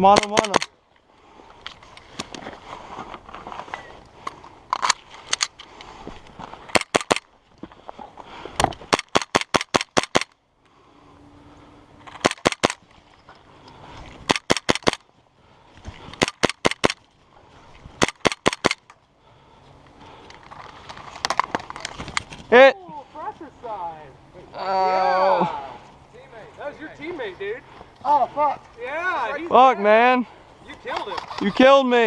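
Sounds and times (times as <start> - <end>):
airsoft guns firing: 0.0 - 0.7, 6.7 - 7.2, 8.9 - 10.4, 12.2 - 12.8, 14.3 - 15.0, 16.2 - 17.0, 18.0 - 18.8.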